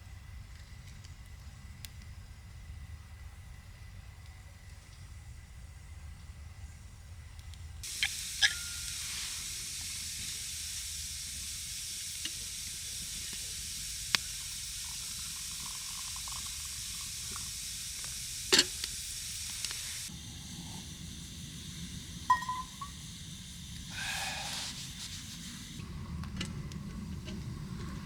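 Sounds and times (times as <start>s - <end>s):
steady sizzling hiss: 0.0s - 28.0s.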